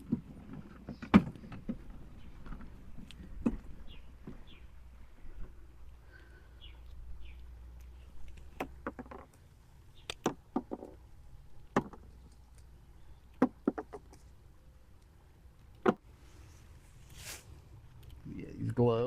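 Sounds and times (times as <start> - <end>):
peanut pods knocking and clicking: 7.4 - 9.4, 10.0 - 11.0, 11.6 - 14.3.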